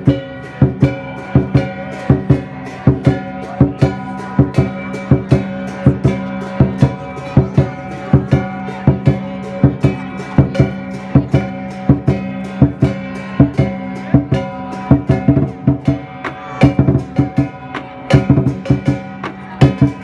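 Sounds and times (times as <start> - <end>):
music with drum beat and guitar: 0.0 - 20.0.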